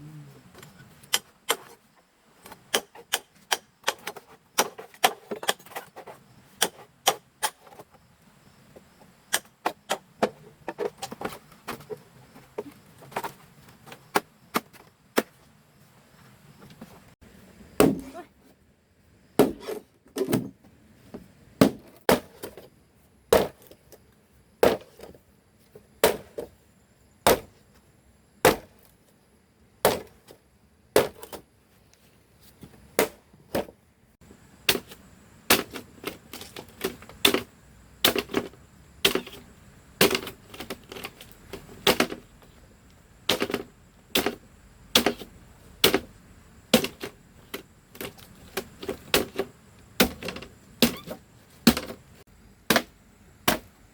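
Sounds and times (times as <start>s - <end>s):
chopping blows on wood: 17.8s - 18.2s, 19.4s - 20.5s, 21.6s - 22.5s, 26.0s - 26.5s, 27.3s - 27.5s, 28.4s - 28.8s, 44.2s - 46.1s, 50.0s - 52.0s, 52.7s - 53.7s.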